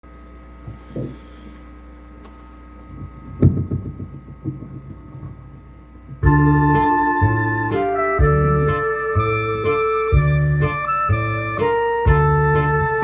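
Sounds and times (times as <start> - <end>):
electrical mains hum: 0.0 - 13.0
ringing thump: 0.7 - 1.4, 2.9 - 6.8
electronic organ chords: 2.8 - 13.0
small knock: 3.4 - 5.4.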